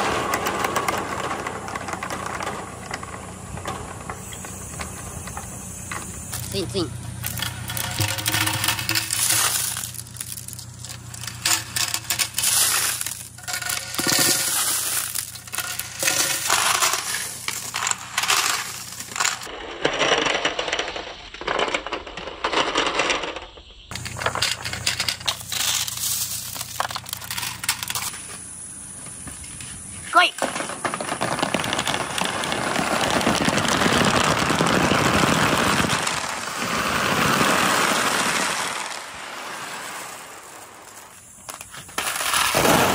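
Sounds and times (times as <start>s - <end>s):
marbles rolling and clattering: 0.0s - 28.4s, 29.0s - 42.9s.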